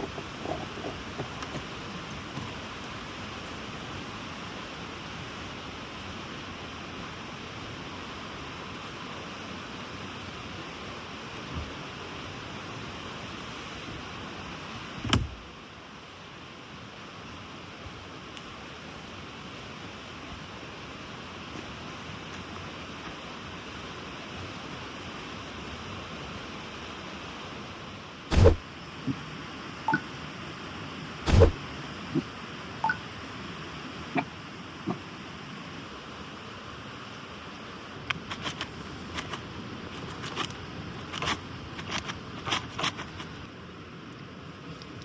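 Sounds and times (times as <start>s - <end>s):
steady hiss: 0.0s - 45.0s
loud heavy thump: 28.3s - 28.6s, 31.3s - 31.6s
steady rushing noise: 28.3s - 28.7s, 31.2s - 32.3s.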